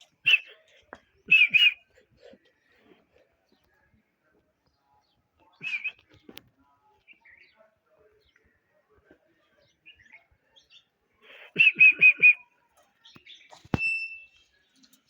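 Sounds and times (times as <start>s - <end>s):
bird chirping: 0.0s - 4.0s.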